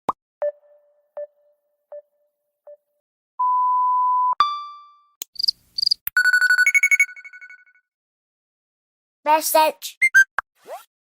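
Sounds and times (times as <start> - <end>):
electronic beep: 6.2 - 7.8.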